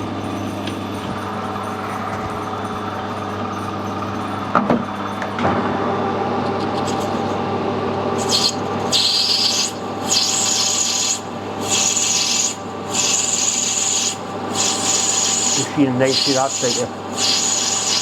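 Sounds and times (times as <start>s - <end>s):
lathe motor hum: 0.7s - 18.0s
lathe tool scraping metal: 8.2s - 18.0s.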